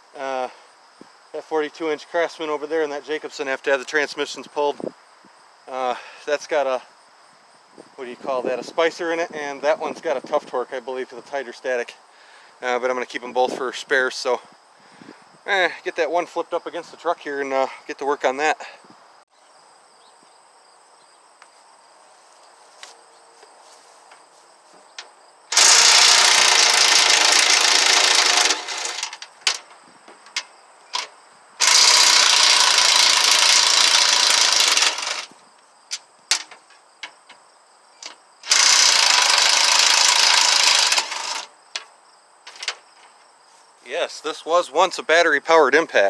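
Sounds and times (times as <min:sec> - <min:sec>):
impact wrench hammering: 0:25.5 - 0:29.7, 0:31.0 - 0:35.4, 0:38.4 - 0:41.5.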